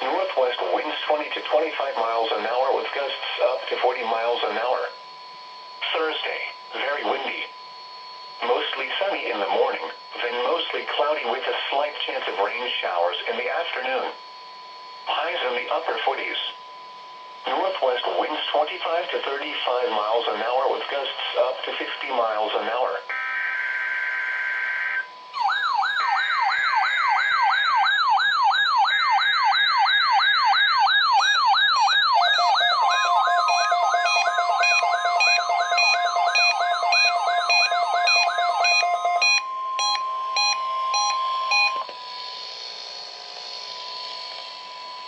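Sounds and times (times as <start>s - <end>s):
radio hiss: 0.0s - 4.9s, 5.8s - 7.5s, 8.4s - 14.2s, 15.1s - 16.6s, 17.4s - 23.0s
warbling alarm tone: 23.1s - 45.0s
beeps: 32.1s - 42.0s
steady alert tone: 32.2s - 41.8s.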